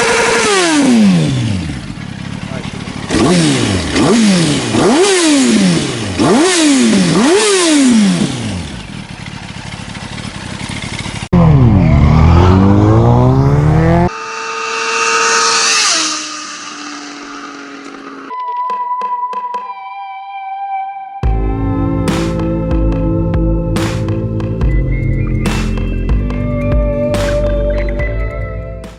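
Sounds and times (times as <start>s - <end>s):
motorcycle engine revving: 0.0s - 18.3s
loud sweeping sound: 11.6s - 18.3s
steady held tones: 11.7s - 18.6s.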